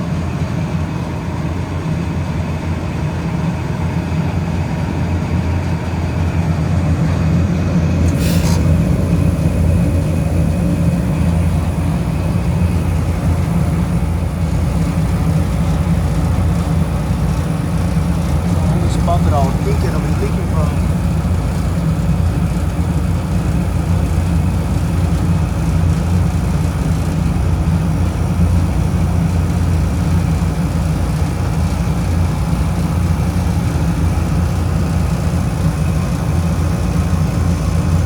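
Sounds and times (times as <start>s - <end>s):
refrigeration machine hum: 0.0s - 38.0s
short hiss: 8.1s - 9.4s.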